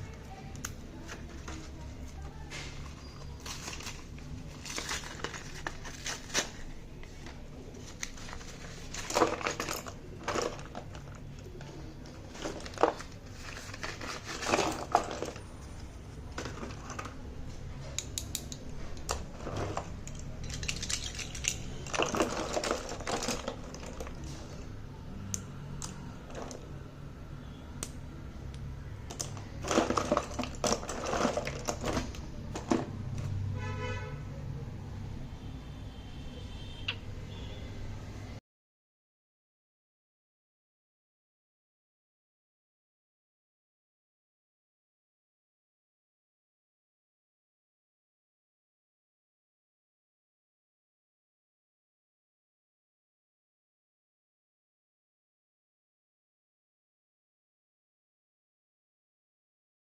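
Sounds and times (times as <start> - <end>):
slate pencils clinking together: 20.0 - 24.1.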